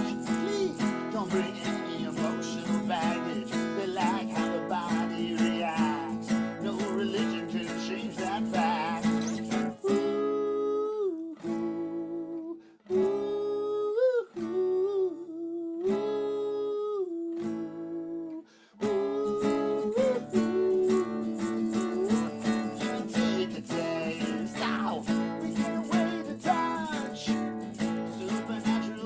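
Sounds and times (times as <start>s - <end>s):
acoustic guitar music: 0.0s - 15.0s, 15.8s - 29.0s.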